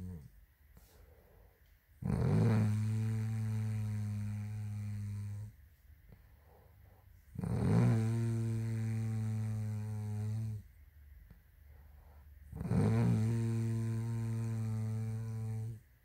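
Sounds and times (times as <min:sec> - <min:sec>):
woman snoring: 0:02.0 - 0:05.5, 0:07.4 - 0:10.6, 0:12.5 - 0:15.8.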